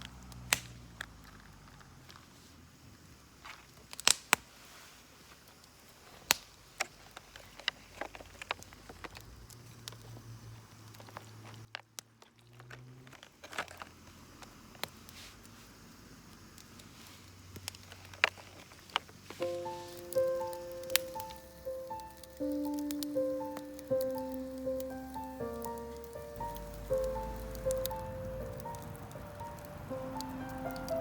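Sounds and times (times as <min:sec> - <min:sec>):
wood fire crackling: 0:03.7 - 0:04.5, 0:14.5 - 0:31.0
sharp pops: 0:19.4 - 0:31.0.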